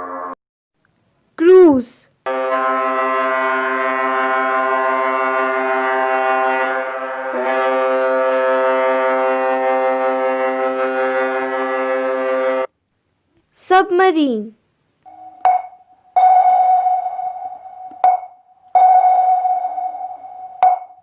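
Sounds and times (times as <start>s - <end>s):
ship's horn deep blasts: 2.3s - 12.7s.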